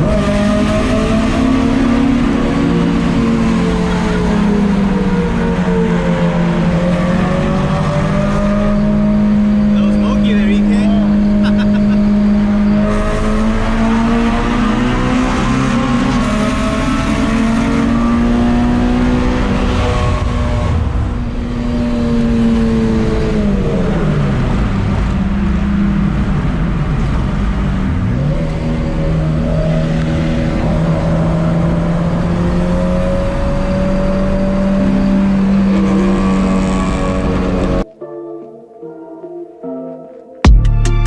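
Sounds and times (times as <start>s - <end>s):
high-revving car engine: 0.0s - 37.8s
road noise: 0.0s - 37.9s.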